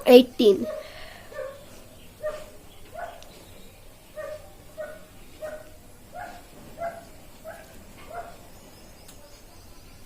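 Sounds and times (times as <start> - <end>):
dog barking: 0.6 - 1.6, 2.2 - 3.3, 4.2 - 8.5.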